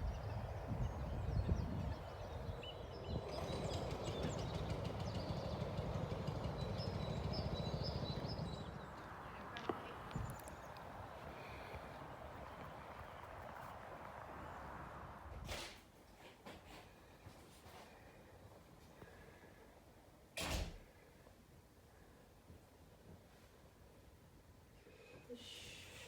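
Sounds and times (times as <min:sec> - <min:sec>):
small birds chirping: 0:00.0 - 0:14.8.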